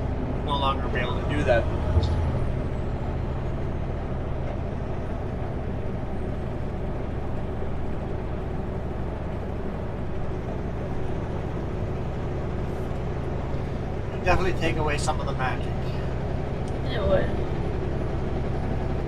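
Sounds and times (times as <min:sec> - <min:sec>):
diesel truck engine drone: 0:00.0 - 0:19.0
tyre and road noise: 0:00.0 - 0:19.0.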